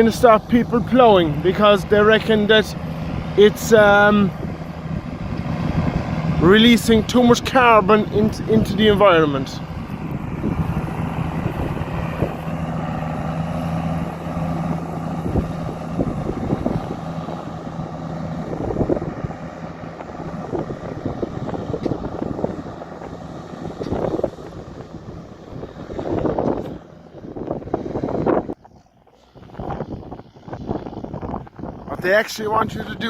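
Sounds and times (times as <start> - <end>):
tractor diesel engine running: 0.0 - 33.0
wind on microphone: 0.0 - 33.0.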